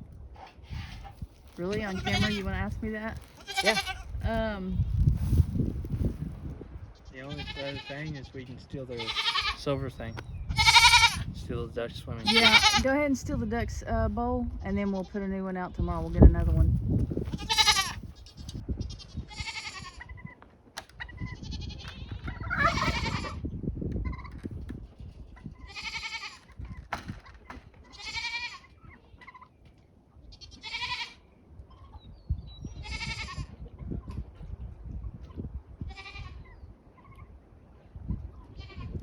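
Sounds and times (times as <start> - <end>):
goats bleating: 0.7 - 4.2, 7.0 - 9.6, 10.5 - 11.3, 12.2 - 12.9, 17.3 - 20.1, 21.3 - 23.4, 25.6 - 26.4, 27.9 - 28.8, 30.3 - 31.2, 32.8 - 33.5, 35.9 - 36.4.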